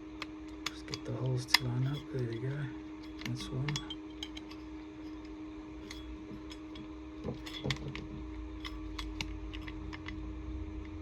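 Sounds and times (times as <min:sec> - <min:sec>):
steady low hum: 0:00.0 - 0:11.0
small metallic clicks and taps: 0:00.2 - 0:10.2.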